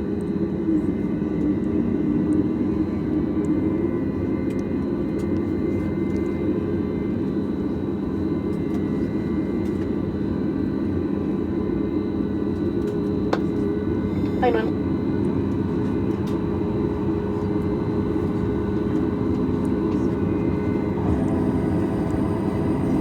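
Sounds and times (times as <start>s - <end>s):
aircraft cabin hum: 15.3s - 23.0s
faint high whine: 20.7s - 23.0s.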